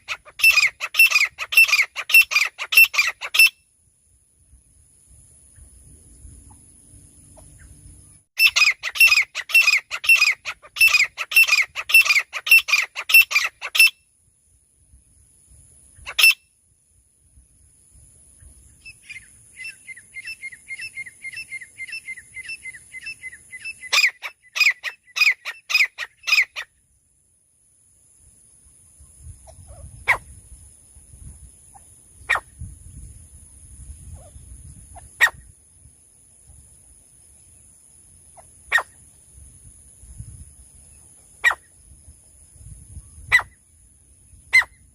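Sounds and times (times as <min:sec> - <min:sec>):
bird calling shrill notes: 0:00.0 - 0:03.7, 0:08.4 - 0:14.1, 0:16.0 - 0:16.6, 0:18.8 - 0:26.8.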